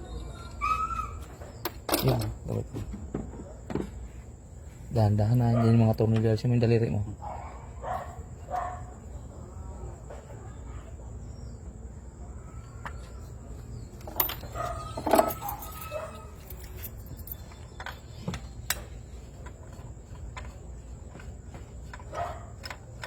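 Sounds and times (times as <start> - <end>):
tools clicking and clinking: 1.6 - 2.4, 14.0 - 20.6.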